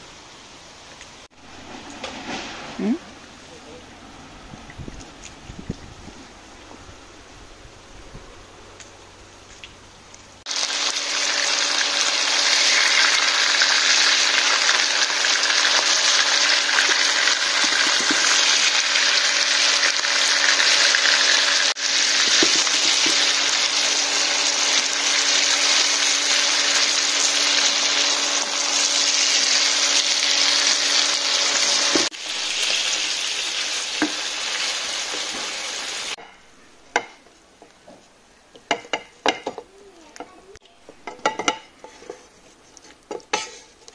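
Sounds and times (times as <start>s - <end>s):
food sizzling in a pan: 1.2s - 3.0s, 10.4s - 37.2s, 43.1s - 43.9s.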